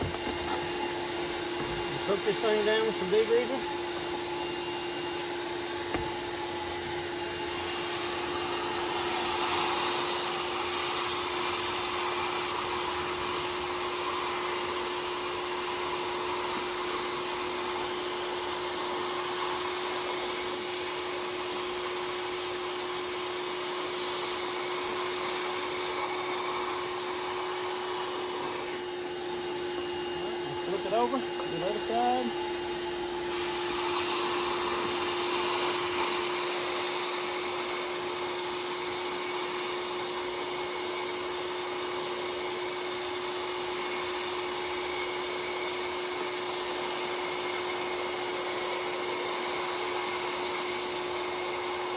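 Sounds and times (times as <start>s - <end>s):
suction hiss: 0.0s - 39.7s
vacuum motor humming: 0.0s - 51.9s.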